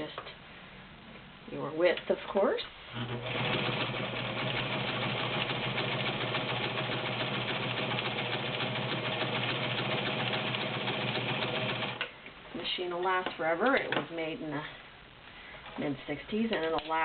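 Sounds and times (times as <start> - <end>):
sewing machine running: 2.9 - 12.1.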